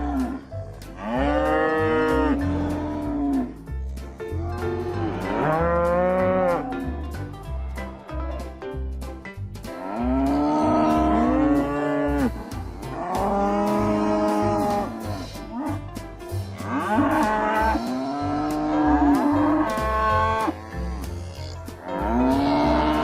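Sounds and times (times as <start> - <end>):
background music with bass pulse: 0.0 - 23.0
cattle mooing: 1.0 - 3.6, 4.6 - 6.8, 9.8 - 15.7, 16.6 - 23.0.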